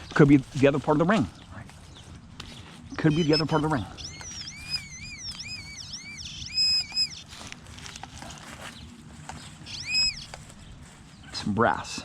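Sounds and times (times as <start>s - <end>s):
metal detector warbling tone: 3.1s - 7.2s.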